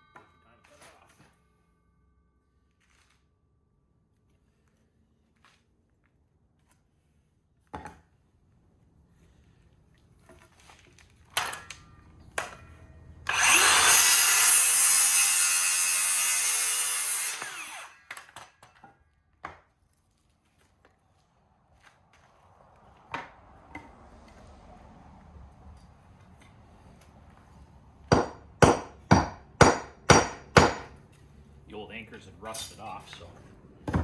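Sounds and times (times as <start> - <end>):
power saw cutting board: 13.2 - 18.6.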